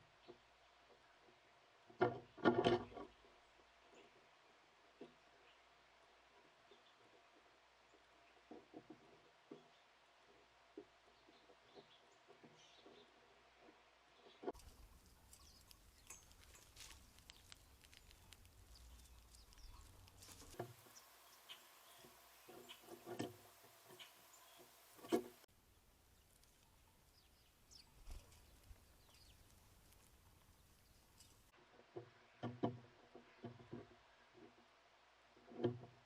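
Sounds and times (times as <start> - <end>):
faint bird chirps: 14.2 - 31.5
light taps and clicks: 14.5 - 20.9
background hiss: 14.5 - 31.6.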